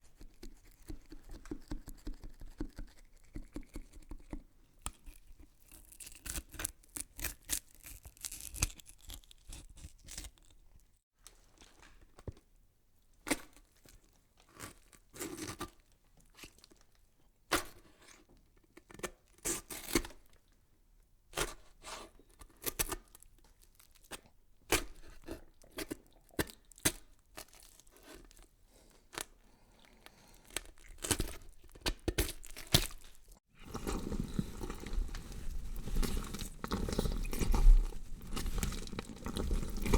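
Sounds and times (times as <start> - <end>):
cracking and snapping noises: 30.4 - 39.9.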